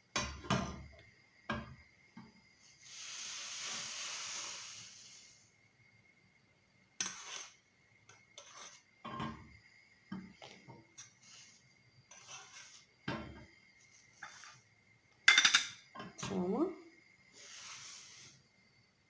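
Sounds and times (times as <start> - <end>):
metal spoon scraping a pot: 7.0 - 9.4, 10.9 - 14.6.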